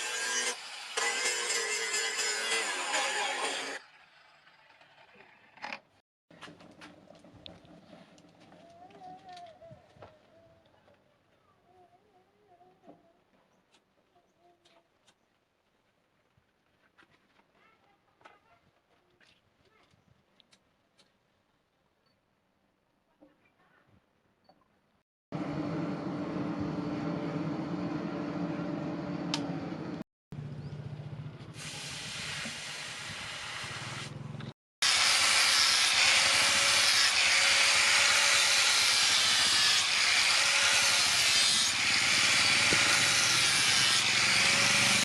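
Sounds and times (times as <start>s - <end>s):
power tool grinding: 0.0s - 5.6s, 34.8s - 45.0s.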